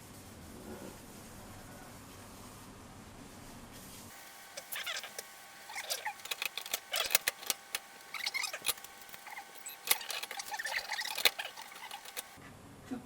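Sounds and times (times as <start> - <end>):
clicks and scrapes of dryer parts: 4.6 - 12.4.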